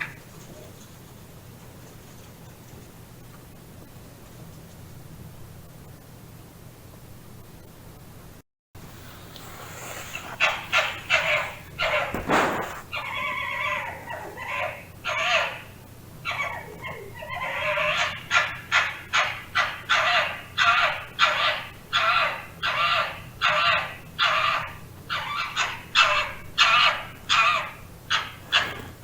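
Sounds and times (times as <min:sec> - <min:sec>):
fox yelping and crying: 0:10.1 - 0:28.9.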